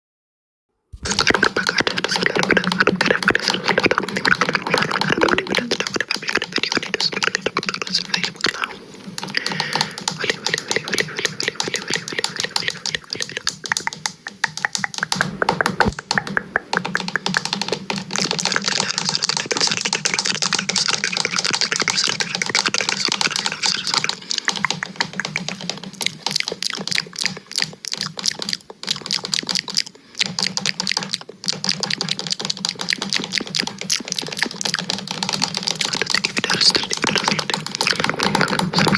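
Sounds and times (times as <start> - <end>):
steady low hum: 1.0 - 26.3
clicking and scratching on microphone: 1.0 - 38.9.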